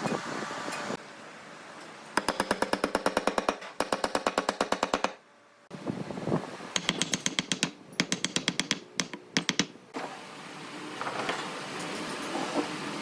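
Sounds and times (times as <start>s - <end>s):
tool clicks and strikes: 1.8s - 5.2s, 6.8s - 9.8s.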